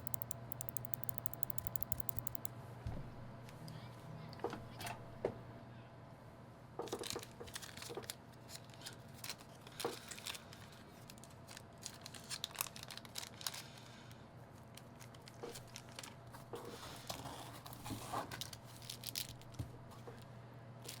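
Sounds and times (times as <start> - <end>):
small crackles: 0.0 - 2.5.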